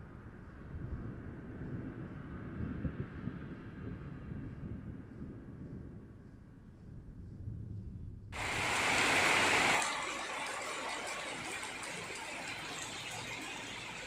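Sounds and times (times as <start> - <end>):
heavy rain hissing: 8.4 - 14.0.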